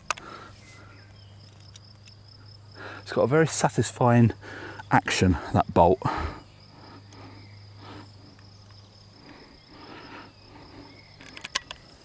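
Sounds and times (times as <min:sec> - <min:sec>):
air rifle clicks: 0:00.0 - 0:00.3, 0:11.2 - 0:12.0
crickets trilling: 0:00.0 - 0:12.0.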